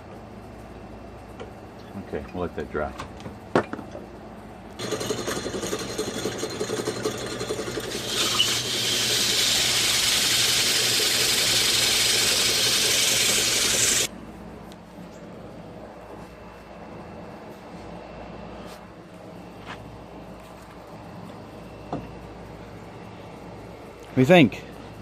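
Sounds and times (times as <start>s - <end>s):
drill press running: 4.8s - 14.1s
loud steady hiss: 8.0s - 14.1s.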